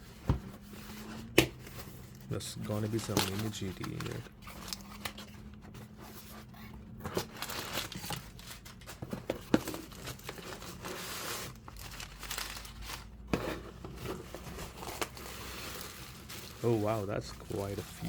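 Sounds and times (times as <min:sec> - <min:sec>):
packaging crinkling and rustling: 0:01.2 - 0:18.0
packaging tearing: 0:02.6 - 0:05.4, 0:07.2 - 0:08.9, 0:09.8 - 0:13.3.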